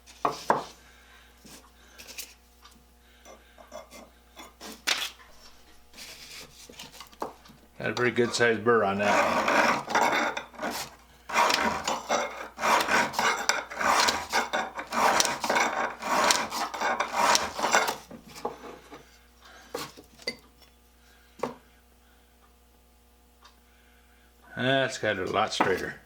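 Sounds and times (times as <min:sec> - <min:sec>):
file rasping on steel: 0:08.2 - 0:18.0.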